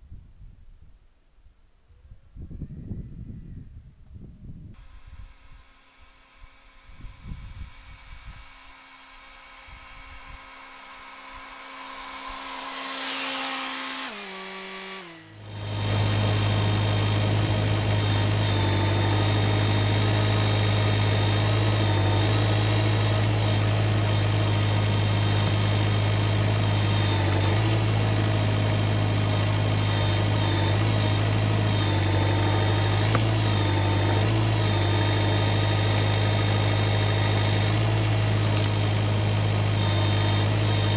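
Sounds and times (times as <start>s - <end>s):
tractor diesel engine running: 15.2s - 40.9s.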